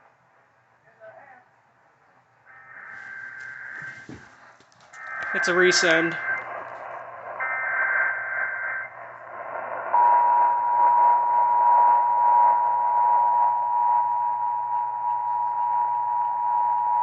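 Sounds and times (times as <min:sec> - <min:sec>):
radio hiss: 0:02.5 - 0:10.0
warbling data burst screech: 0:05.0 - 0:08.9
two-tone attention signal: 0:10.0 - 0:17.0.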